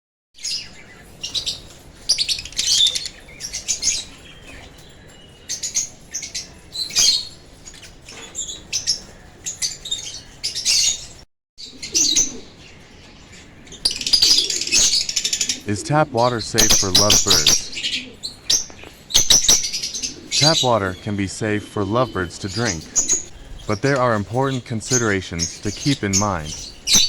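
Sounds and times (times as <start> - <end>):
lovebirds chirping: 0.4 - 27.0.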